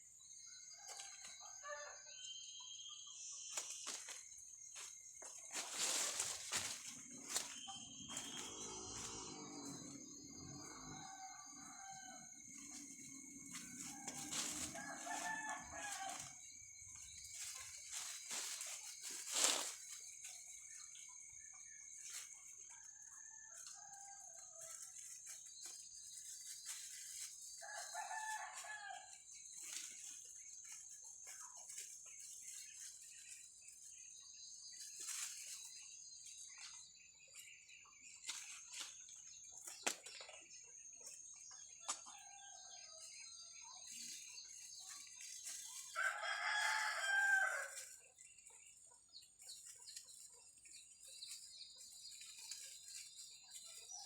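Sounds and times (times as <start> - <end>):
faint rooster crowing: 0.4 - 2.8, 5.6 - 16.6, 22.0 - 25.3, 26.9 - 29.4, 41.7 - 44.2, 45.6 - 48.0
high-pitched background whine: 1.5 - 22.2.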